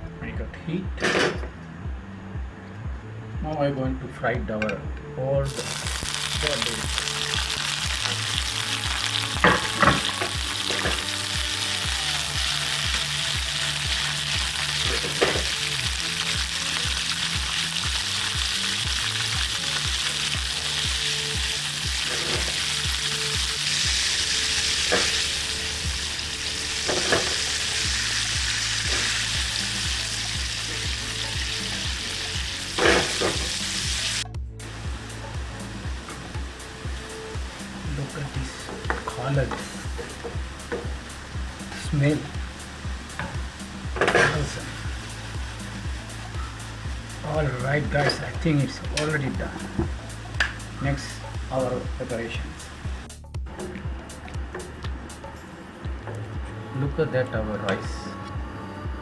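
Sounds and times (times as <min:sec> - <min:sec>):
food sizzling in hot oil: 0:05.5 - 0:53.2.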